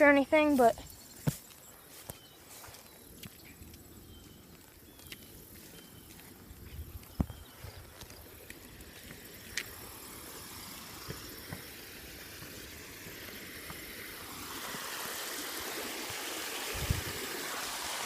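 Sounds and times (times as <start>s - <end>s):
creek water rushing: 8.3s - 18.0s.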